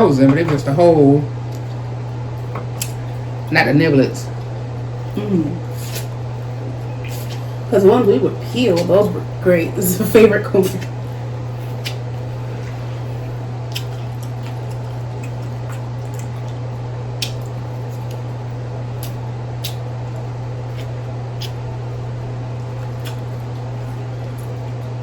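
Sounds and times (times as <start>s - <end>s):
steady low hum: 0.0s - 25.0s
wet eating smacks: 2.7s - 3.2s, 4.4s - 7.5s, 10.6s - 24.9s.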